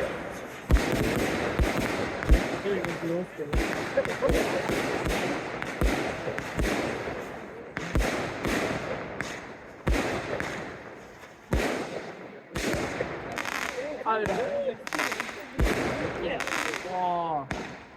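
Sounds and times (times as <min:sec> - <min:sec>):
firework booms: 0:00.0 - 0:17.9
firework crackle and hiss: 0:00.0 - 0:17.9.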